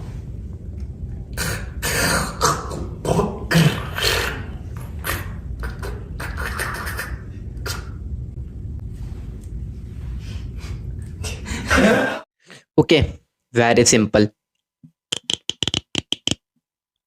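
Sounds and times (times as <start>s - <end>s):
beatboxing mouth pops and clicks: 3.8s - 8.0s, 15.1s - 16.4s.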